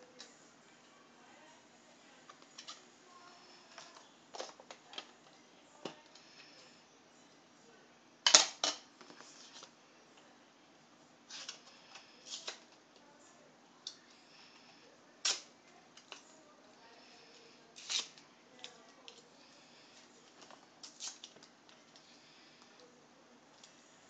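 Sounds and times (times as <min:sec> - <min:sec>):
playing cards clicking and rustling: 0:11.3 - 0:12.8, 0:17.8 - 0:19.2.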